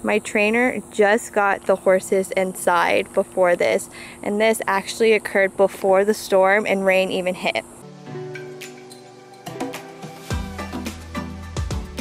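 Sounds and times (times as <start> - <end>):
background music with steady beat: 7.8 - 12.0.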